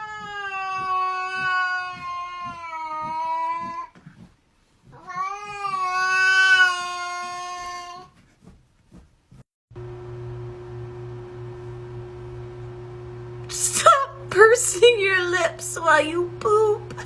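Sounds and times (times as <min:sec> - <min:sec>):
cat yowling meows: 0:00.0 - 0:03.9, 0:05.0 - 0:08.1.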